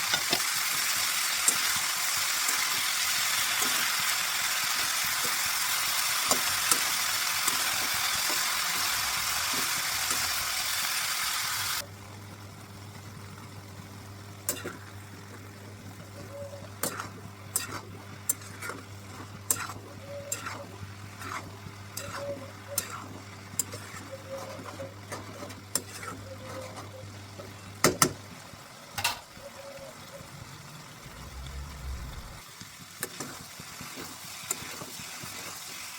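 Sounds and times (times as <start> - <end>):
metal spatula scraping a pan: 0.0 - 0.5, 16.9 - 18.8, 19.5 - 26.9
cabbage sizzling in a pan: 0.0 - 16.0, 31.2 - 35.9.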